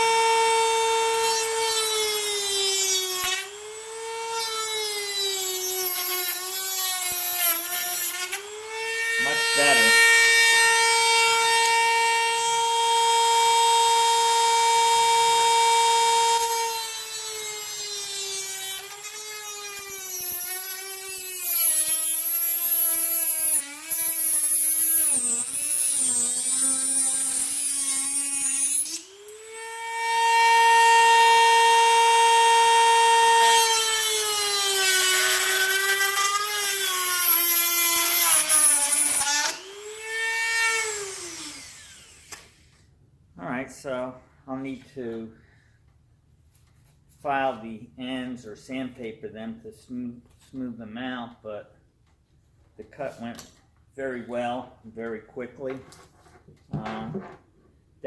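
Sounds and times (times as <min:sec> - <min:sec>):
rotary saw cutting plywood: 0:00.0 - 0:42.8.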